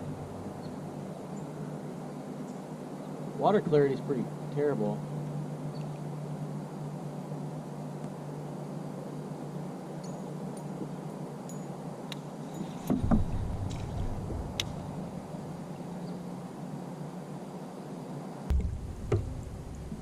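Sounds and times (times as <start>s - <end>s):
steady low hum: 0.0s - 20.0s
dull knock on kayak: 12.9s - 13.8s.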